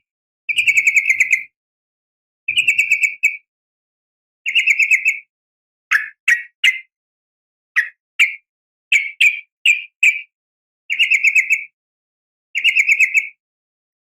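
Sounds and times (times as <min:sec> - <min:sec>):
bird chirping: 0:00.0 - 0:01.5, 0:02.5 - 0:03.5, 0:04.4 - 0:05.3, 0:05.9 - 0:06.9, 0:07.7 - 0:10.3, 0:10.9 - 0:11.8, 0:12.6 - 0:13.4.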